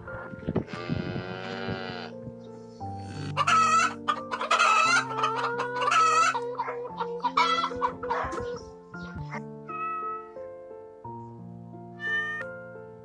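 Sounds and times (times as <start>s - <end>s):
music with low held notes: 0.0s - 13.0s
chickens calling: 2.8s - 10.5s, 12.0s - 12.5s.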